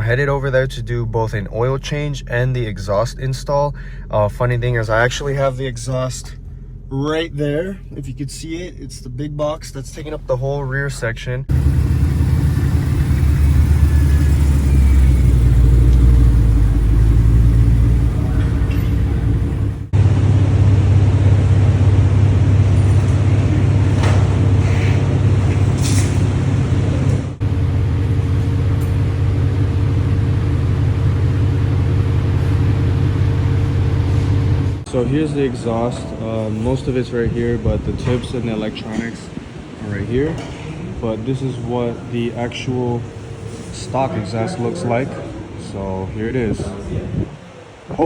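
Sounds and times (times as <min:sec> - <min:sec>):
car engine hum: 0:11.4 - 0:34.9.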